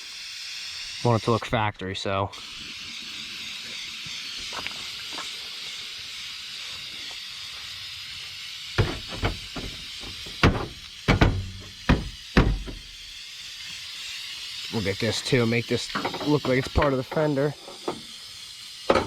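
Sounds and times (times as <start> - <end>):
spray paint can hissing: 0.0 - 19.0
sharp knocks: 8.8 - 12.9.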